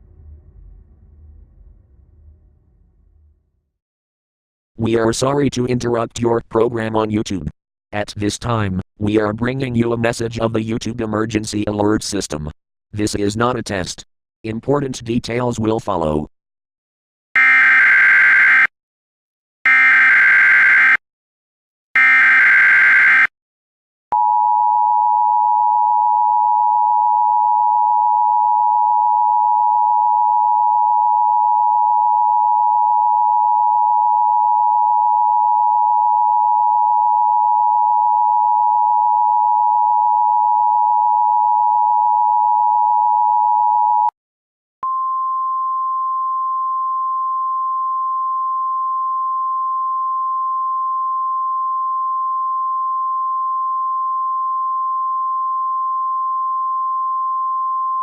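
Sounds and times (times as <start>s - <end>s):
single steady tone: 44.8s - 58.0s.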